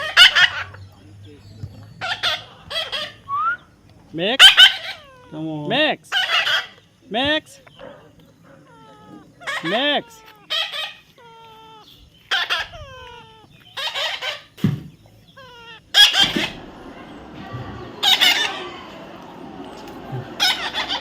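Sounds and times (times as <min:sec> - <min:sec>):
parrot screeching: 0:00.0 - 0:00.8, 0:02.0 - 0:03.3, 0:04.4 - 0:05.5, 0:06.1 - 0:06.8, 0:08.7 - 0:14.6, 0:15.3 - 0:17.4, 0:18.0 - 0:18.9, 0:20.4 - 0:21.0
whistled chirps: 0:03.1 - 0:03.8.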